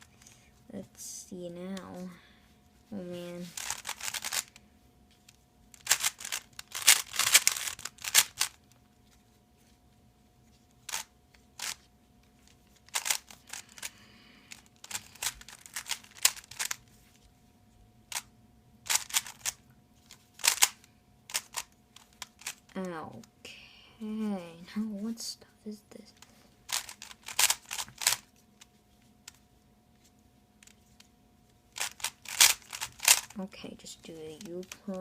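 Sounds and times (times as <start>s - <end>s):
rubik's cube plastic clicks: 3.5s - 4.6s, 5.7s - 8.6s, 10.8s - 16.8s, 18.9s - 23.2s, 26.2s - 29.4s, 31.7s - 33.4s, 34.1s - 35.0s.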